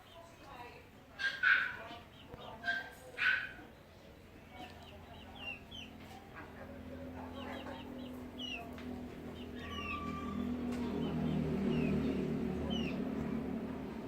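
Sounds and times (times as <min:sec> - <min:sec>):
chickens peeping: 0:03.6 - 0:14.0.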